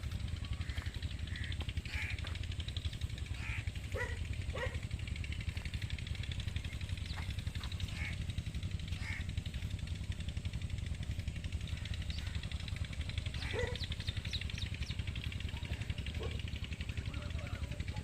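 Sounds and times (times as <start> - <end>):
pulsing engine-like drone: 0.0 - 18.0
animal or bird calls: 0.4 - 4.8, 6.6 - 9.8, 11.6 - 17.0.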